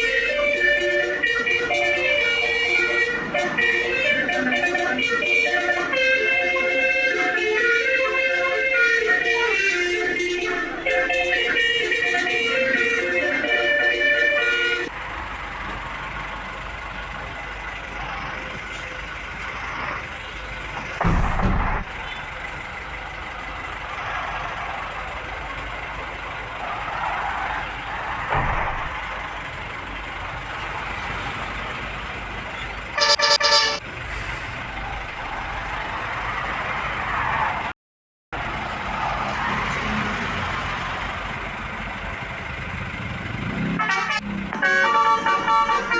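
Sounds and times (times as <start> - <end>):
multi-tone bus horn tune: 0.0 - 14.9, 32.8 - 34.5, 43.2 - 45.9
road traffic: 0.0 - 45.9
heavy vehicle rumbling past: 0.1 - 37.7, 38.4 - 45.9
short multi-tone horn blast: 0.2 - 14.9, 33.0 - 34.3, 43.7 - 45.9.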